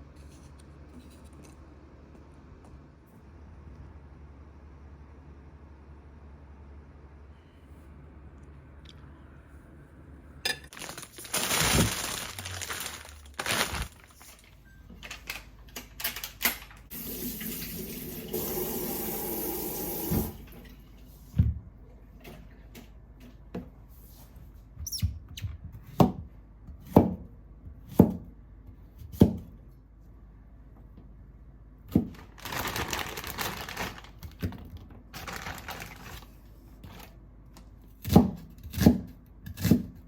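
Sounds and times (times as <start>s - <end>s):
kitchen tap running: 16.9s - 20.6s.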